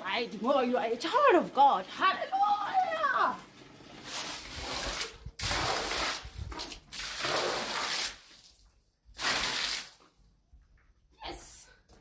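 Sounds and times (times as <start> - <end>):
broom scraping ground: 2.9 - 8.6.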